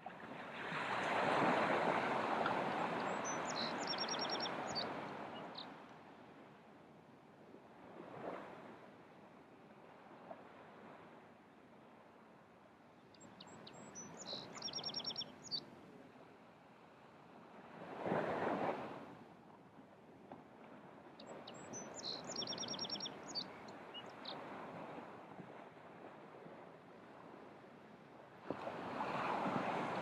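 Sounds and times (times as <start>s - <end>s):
surf washing on sandy beach: 0.0s - 6.7s, 14.1s - 19.3s, 20.6s - 30.0s
songbird singing: 3.0s - 5.8s, 13.0s - 15.7s, 21.2s - 24.4s.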